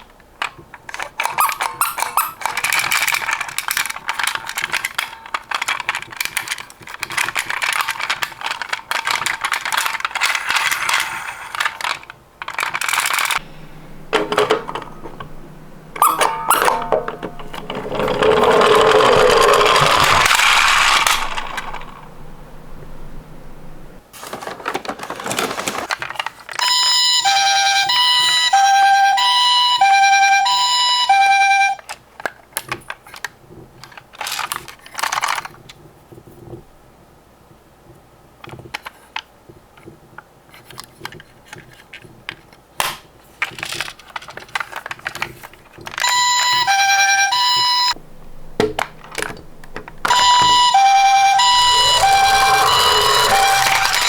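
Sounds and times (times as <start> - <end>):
clicks and knocks: 0.0 - 26.4
toy siren two-tone: 1.2 - 2.8, 16.0 - 21.4, 26.6 - 31.8, 46.0 - 48.0, 50.1 - 54.0
short bursts of noise: 50.0 - 54.0.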